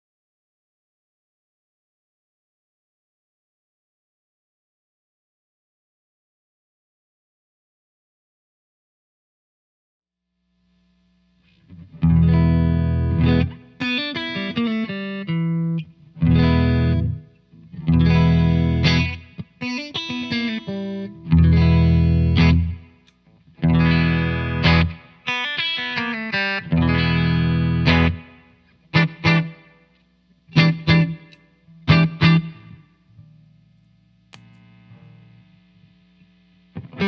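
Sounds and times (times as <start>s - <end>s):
overdriven electric guitar: 11.4s - 37.0s.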